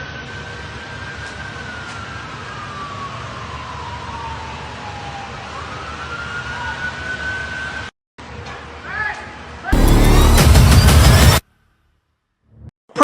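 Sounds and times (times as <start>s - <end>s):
emergency siren wailing: 0.7s - 7.6s.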